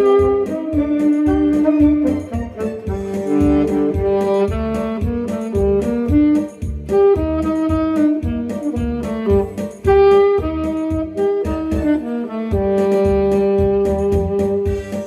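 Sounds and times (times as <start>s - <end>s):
drum beat: 0.0s - 12.0s
bass: 0.0s - 15.0s
saxophones playing duet: 0.0s - 15.0s.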